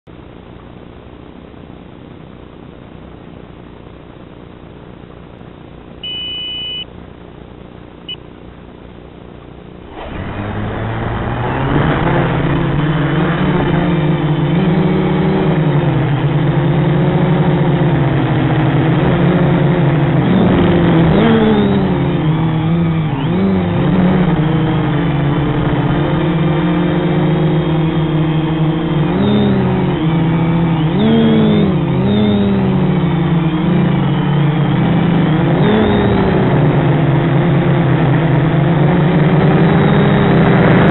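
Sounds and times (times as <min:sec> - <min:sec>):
short beep: 0:06.0 - 0:06.9
quadcopter motors whining: 0:20.3 - 0:37.2.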